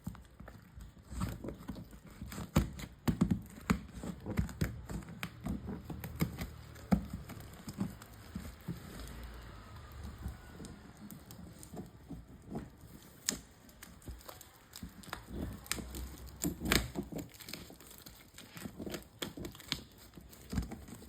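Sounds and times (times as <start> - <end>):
tapping and knocks on cardboard: 0.0 - 9.4
packaging crinkling: 0.0 - 21.0.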